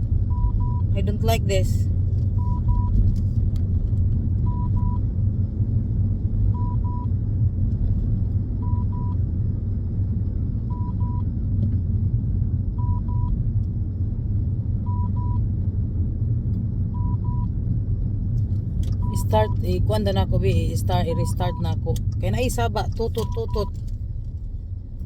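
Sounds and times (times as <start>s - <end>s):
low rumble of car: 0.0s - 25.0s
dashcam double beep: 19.0s - 19.9s, 20.7s - 23.8s.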